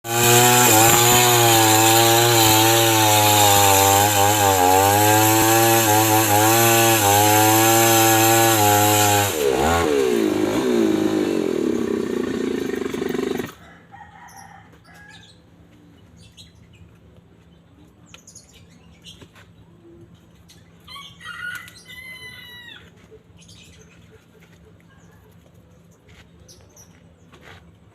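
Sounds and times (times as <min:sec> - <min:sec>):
chainsaw cutting wood: 0:00.0 - 0:13.6.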